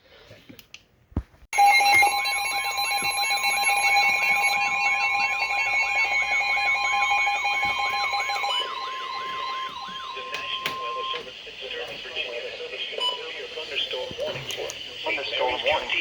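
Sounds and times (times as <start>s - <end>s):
warbling alarm tone: 1.5s - 11.6s
steady two-tone alarm: 1.5s - 14.1s.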